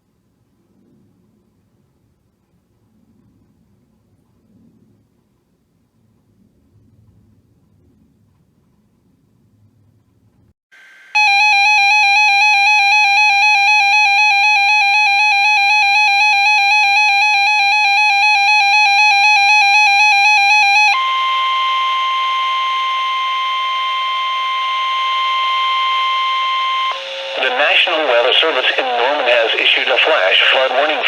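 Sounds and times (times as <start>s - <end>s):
pulsing electronic alarm tone: 10.8s - 28.2s
steady high alert tone: 10.8s - 31.0s.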